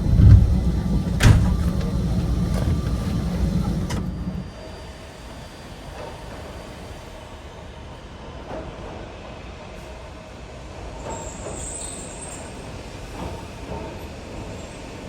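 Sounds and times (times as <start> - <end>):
wheels knocking over rail joints: 0.0 - 4.4
electric train running on track: 0.0 - 15.0.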